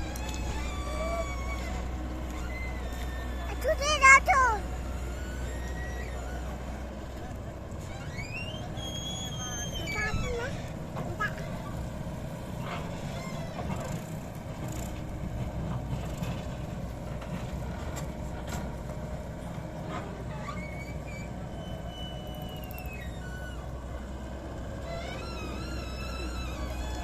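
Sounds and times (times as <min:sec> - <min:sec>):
high wavering squeals: 0:00.0 - 0:07.1, 0:07.9 - 0:11.7, 0:20.4 - 0:24.2, 0:24.8 - 0:27.0
excavator diesel engine rumbling: 0:00.0 - 0:27.0.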